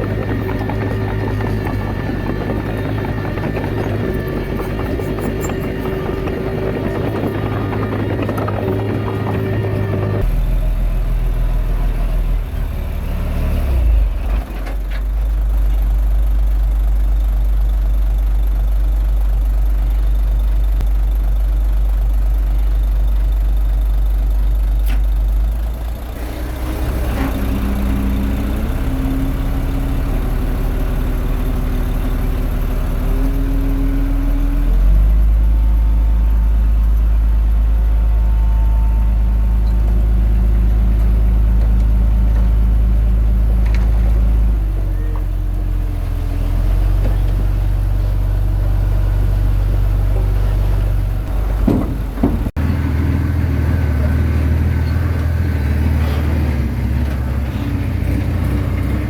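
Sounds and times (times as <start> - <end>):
whining tone: 0.0 - 10.6
bulldozer diesel engine running: 0.0 - 59.0.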